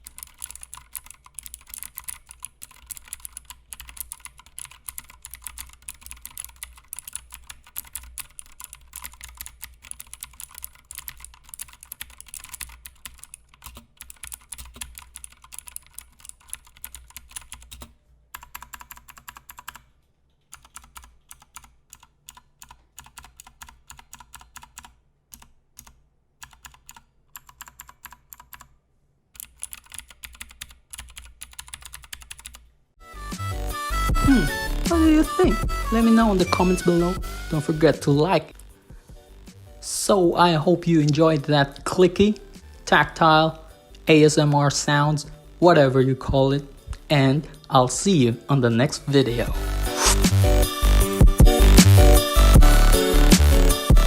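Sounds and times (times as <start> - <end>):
mechanical keyboard typing: 0.0 - 19.9, 20.5 - 28.7, 29.4 - 32.7.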